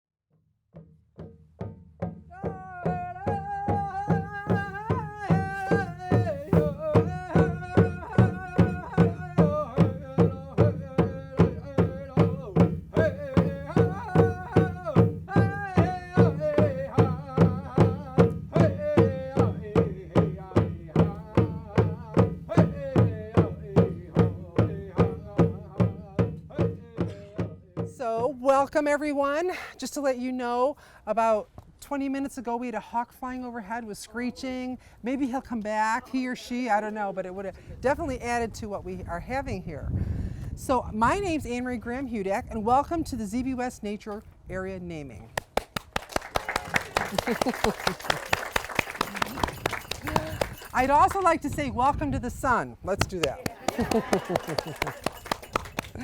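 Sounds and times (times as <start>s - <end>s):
drum beaten steadily: 0.8s - 28.6s, 46.4s - 52.0s, 52.9s - 56.0s.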